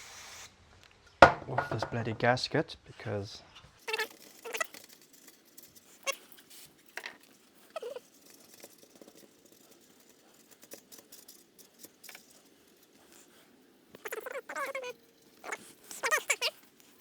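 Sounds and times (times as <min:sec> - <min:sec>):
rubbing and scraping: 0:03.8 - 0:17.0.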